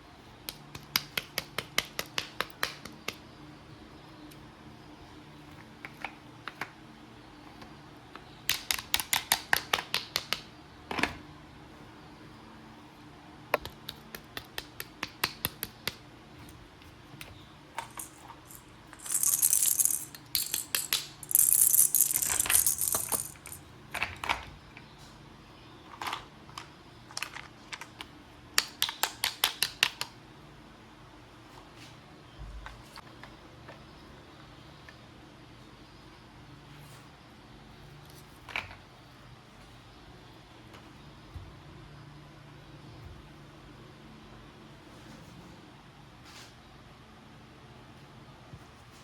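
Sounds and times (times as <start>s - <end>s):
rapid toy clicks: 17.8s - 23.6s.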